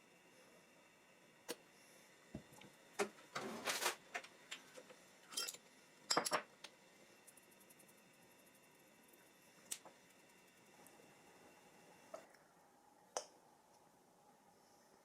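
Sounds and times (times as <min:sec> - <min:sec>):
dishes and utensils clinking: 0:05.3 - 0:06.5.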